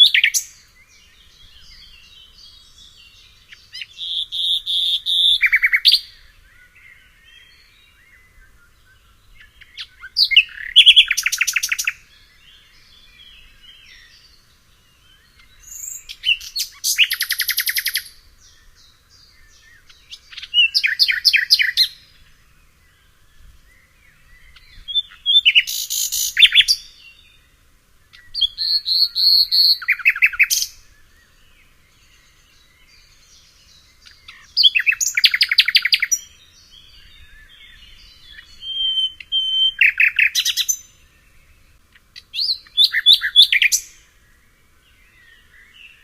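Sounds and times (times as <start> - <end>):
faint bird calls: 0.0 - 46.0
songbird singing with trills: 0.0 - 46.0.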